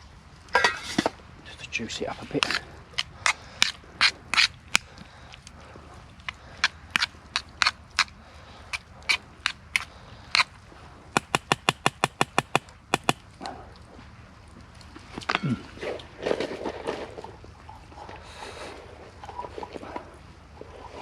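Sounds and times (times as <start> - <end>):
sharp clicks and taps: 11.2 - 13.2.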